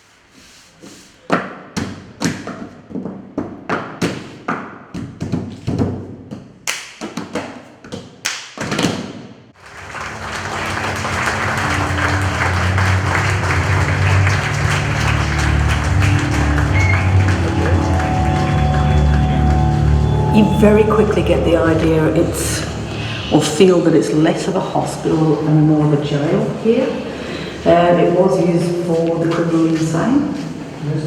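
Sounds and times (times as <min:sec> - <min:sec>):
dense electronic drone: 0:09.6 - 0:27.2.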